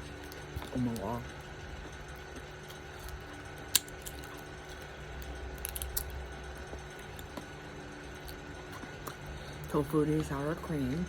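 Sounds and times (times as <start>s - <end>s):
tortilla chips crackling: 0.0s - 9.8s.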